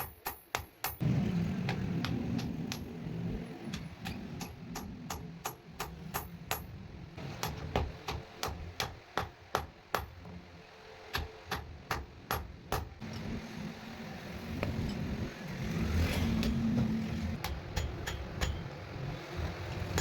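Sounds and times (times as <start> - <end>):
hammer striking metal: 0.0 - 1.0, 3.7 - 10.2, 11.1 - 13.3, 17.4 - 18.8.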